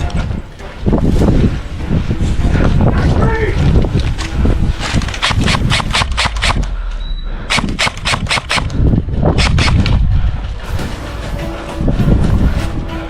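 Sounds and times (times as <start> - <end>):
airsoft guns firing: 5.1 - 6.8, 7.5 - 10.0.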